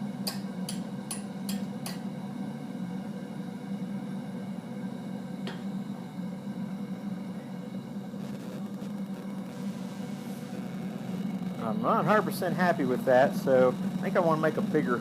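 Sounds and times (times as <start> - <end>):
propane forge drone: 0.0 - 15.0.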